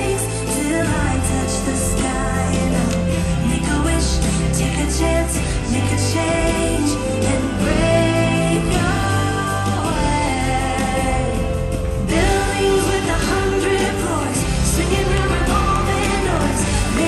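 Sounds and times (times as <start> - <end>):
instrumental backing music: 0.0 - 17.0.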